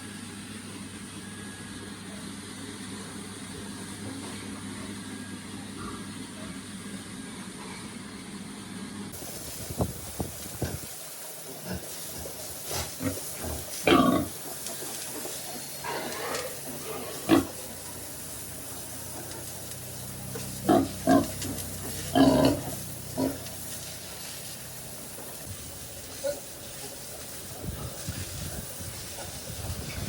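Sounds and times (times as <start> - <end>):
steady hiss: 9.2 - 30.0
pigs calling: 10.4 - 24.2.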